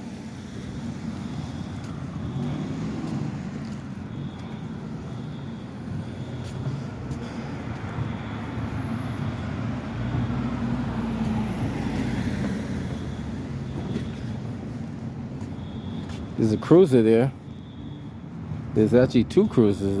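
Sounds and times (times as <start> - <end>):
road traffic rumble: 0.0 - 20.0
vehicle passing: 0.6 - 4.2, 5.8 - 14.1.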